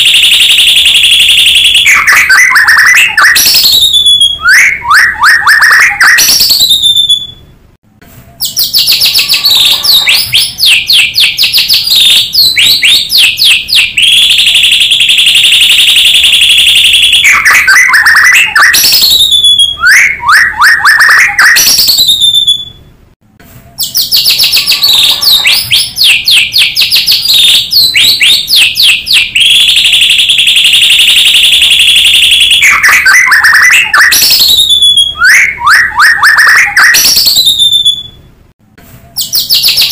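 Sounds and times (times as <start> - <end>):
high bird trill: 0.0 - 7.5, 8.3 - 22.9, 23.7 - 38.2, 39.1 - 39.9
bird song whistled phrases: 1.7 - 7.4, 8.3 - 14.4, 17.2 - 22.8, 23.8 - 29.6, 32.8 - 38.2, 39.1 - 39.9.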